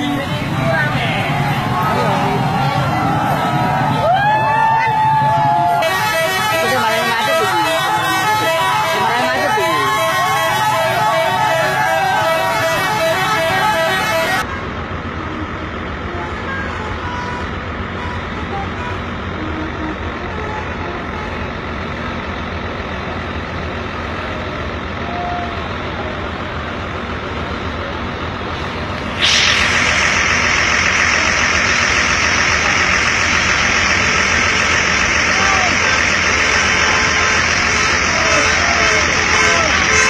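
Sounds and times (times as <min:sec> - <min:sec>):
rumble of passing trucks: 0:00.0 - 0:40.0
steady hiss: 0:28.9 - 0:39.9.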